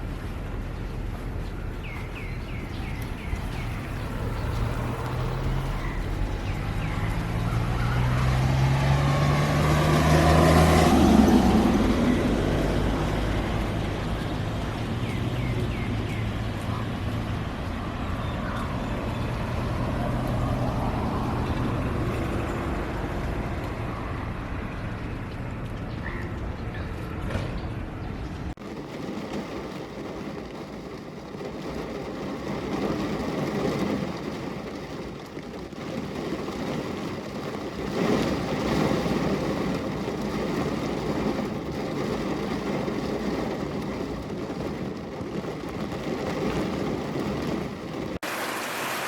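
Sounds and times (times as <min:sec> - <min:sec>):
vehicle driving past: 0:02.5 - 0:25.4.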